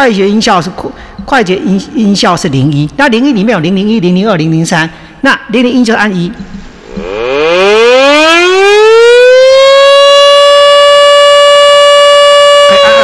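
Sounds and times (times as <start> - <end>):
air raid siren winding up: 6.8 - 13.0.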